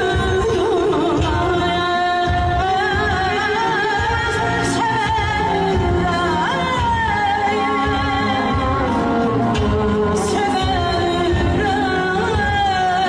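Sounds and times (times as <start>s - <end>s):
band accompaniment: 0.0s - 13.0s
woman singing: 0.0s - 13.0s.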